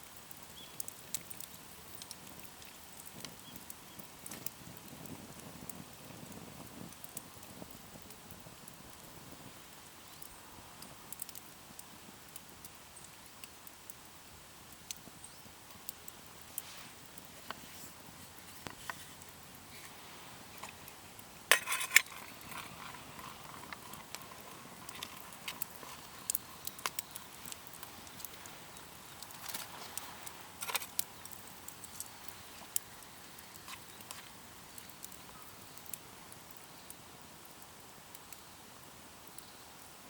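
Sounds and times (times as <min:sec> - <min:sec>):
small clicks and knocks: 0:20.6 - 0:28.5, 0:29.2 - 0:32.8.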